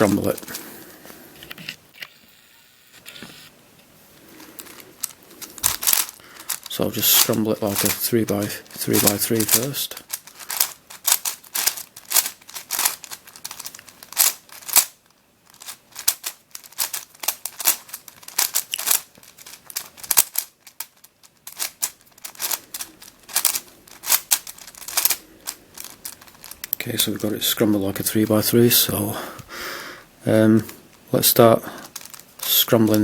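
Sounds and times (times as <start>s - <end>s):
plastic puzzle cube clicking: 4.6s - 27.2s, 31.8s - 33.0s.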